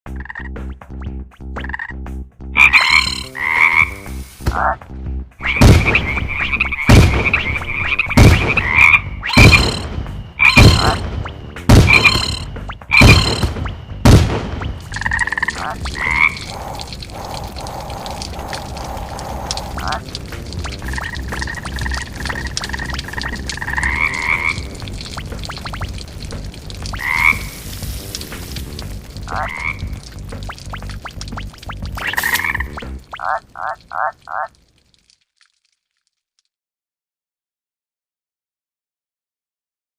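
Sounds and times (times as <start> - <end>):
cartoon frog croaking: 2.6 - 4.8, 10.4 - 11.0, 11.9 - 13.4, 14.9 - 27.5, 28.8 - 34.6
sharp crackles and clicks: 5.4 - 36.5.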